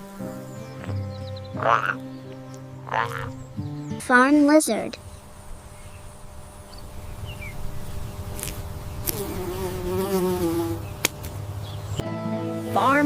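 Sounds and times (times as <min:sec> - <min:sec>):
flying insect buzzing: 0:00.0 - 0:03.4, 0:05.0 - 0:11.5.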